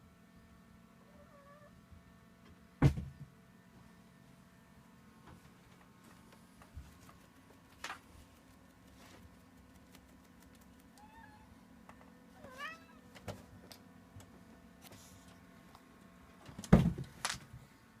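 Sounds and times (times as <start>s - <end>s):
cat meowing: 11.0s - 11.5s, 12.4s - 13.1s.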